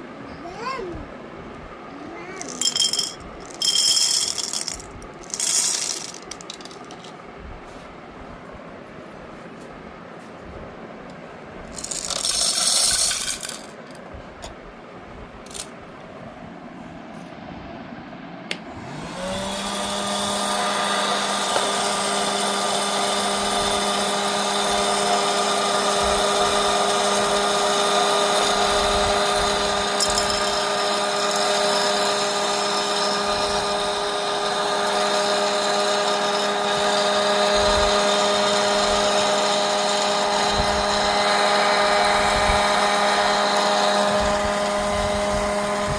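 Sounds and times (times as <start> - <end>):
popcorn machine motor humming: 2.2 - 7.2, 11.6 - 13.8, 18.6 - 45.9.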